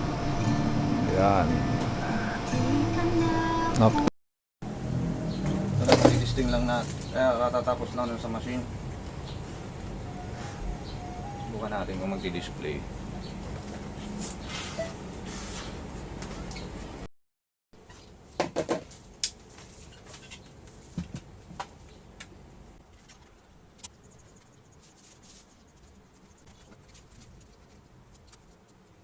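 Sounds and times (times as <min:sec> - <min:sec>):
laptop hum: 0:04.7 - 0:16.5.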